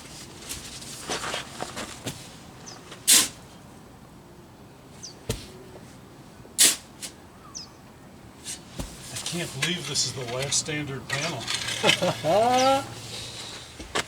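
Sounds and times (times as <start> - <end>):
shovel scraping into soil: 0.1 - 3.4, 5.3 - 5.6, 6.6 - 7.2, 8.4 - 14.0.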